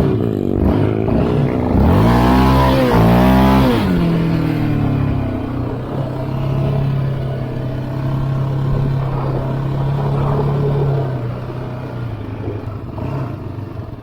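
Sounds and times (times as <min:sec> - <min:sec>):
atv engine running: 0:00.0 - 0:14.0.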